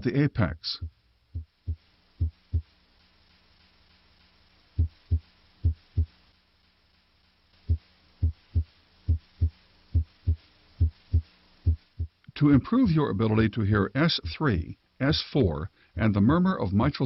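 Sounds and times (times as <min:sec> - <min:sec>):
faint steady hum: 0:00.0 - 0:17.0
heartbeat thumps: 0:00.8 - 0:02.7, 0:04.8 - 0:06.2, 0:07.6 - 0:12.2.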